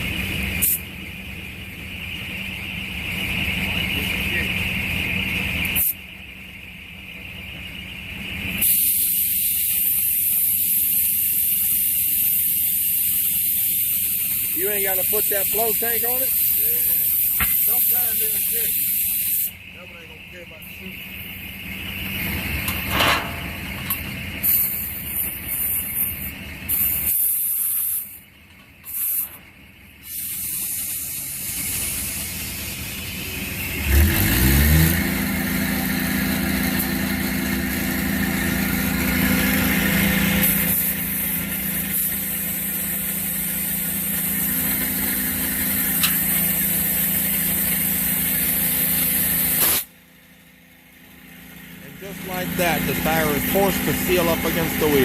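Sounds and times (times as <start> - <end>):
compressed air hissing: 8.6 - 19.6, 24.4 - 28.2, 28.8 - 29.3, 30.0 - 32.8, 36.7 - 50.0.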